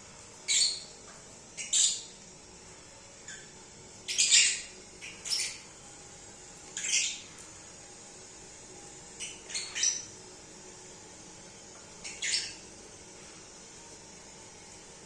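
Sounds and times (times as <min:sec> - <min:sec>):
birds squawking: 0:04.1 - 0:05.7, 0:06.8 - 0:07.3, 0:12.0 - 0:12.6.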